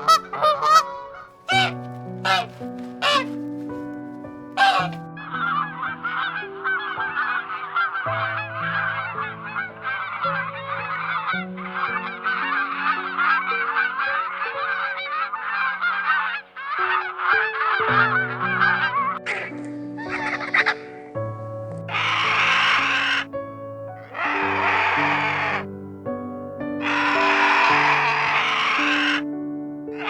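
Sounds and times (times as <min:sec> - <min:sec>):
flock of birds chattering: 0:00.0 - 0:03.8, 0:04.6 - 0:05.0, 0:21.9 - 0:23.3, 0:24.1 - 0:25.6, 0:26.8 - 0:29.2
soft background music: 0:00.0 - 0:30.0.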